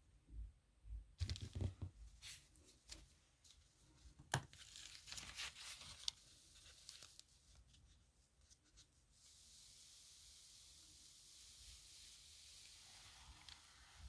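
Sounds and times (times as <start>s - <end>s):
faint hiss: 8.6s - 14.0s.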